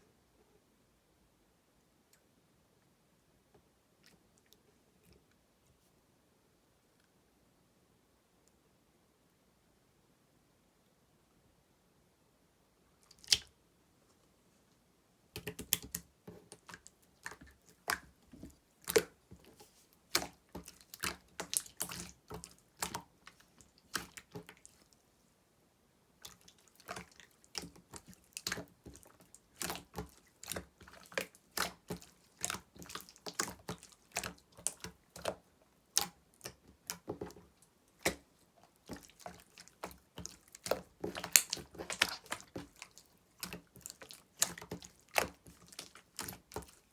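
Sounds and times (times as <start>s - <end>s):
slime sticky clicks and wet pops: 13.1s - 13.5s, 38.9s - 46.8s.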